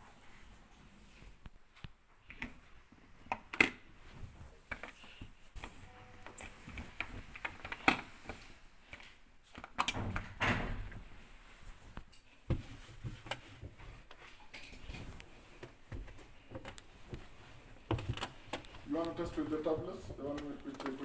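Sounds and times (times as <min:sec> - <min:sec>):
handling clicks and knocks: 0:04.6 - 0:10.2, 0:11.9 - 0:21.0.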